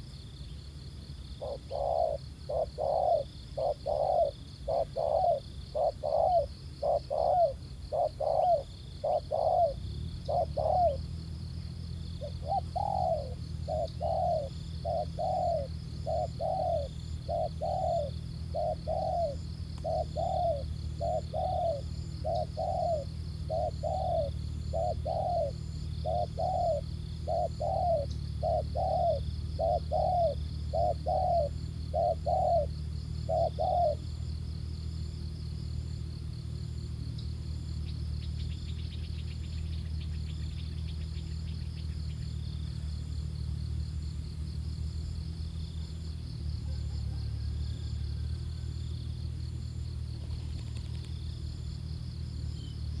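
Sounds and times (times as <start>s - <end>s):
dove cooing: 1.3s - 35.4s, 45.5s - 51.4s.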